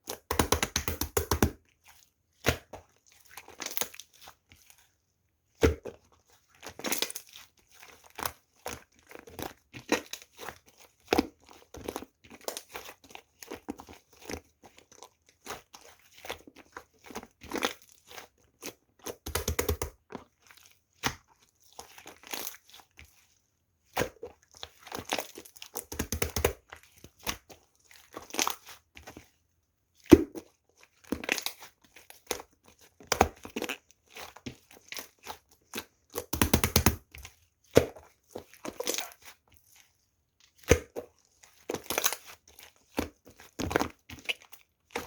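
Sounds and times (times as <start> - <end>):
slime squished by hand: 0.1 - 1.6, 24.8 - 27.5, 36.2 - 39.4.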